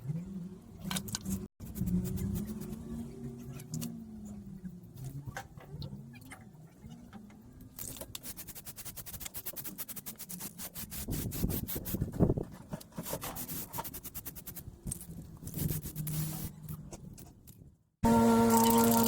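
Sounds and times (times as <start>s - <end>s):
rapid rubbing strokes: 1.6s - 2.9s, 8.2s - 16.6s.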